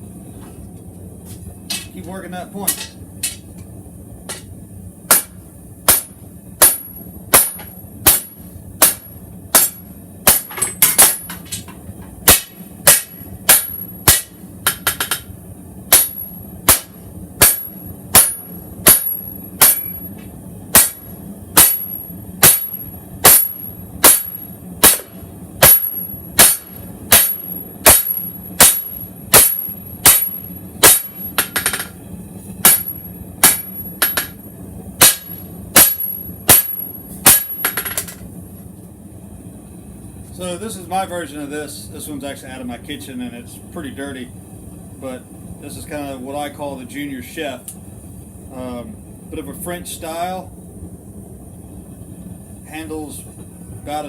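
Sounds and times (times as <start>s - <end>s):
low hum: 0.0s - 54.0s
hammer striking steel on anvil: 1.6s - 3.5s, 4.3s - 4.5s, 5.1s - 15.3s, 15.9s - 32.0s, 32.6s - 34.4s, 35.0s - 38.2s.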